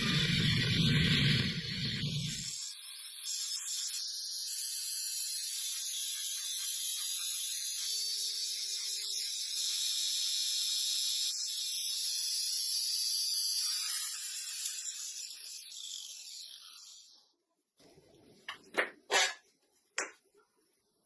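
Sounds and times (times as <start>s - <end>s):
high-pitched hissing: 0.0s - 2.6s.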